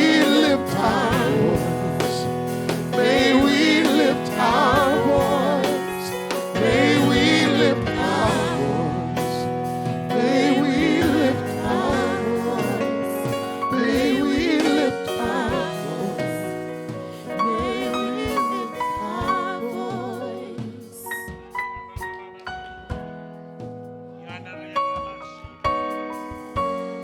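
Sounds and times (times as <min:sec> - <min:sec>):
voices singing with vibrato: 0:00.0 - 0:21.6
keyboard chords: 0:00.0 - 0:27.0.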